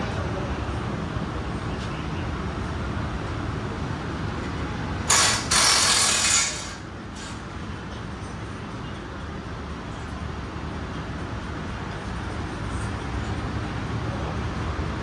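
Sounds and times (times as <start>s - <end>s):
low rumble of shop noise: 0.0s - 15.0s
power tool bursts: 5.1s - 7.4s.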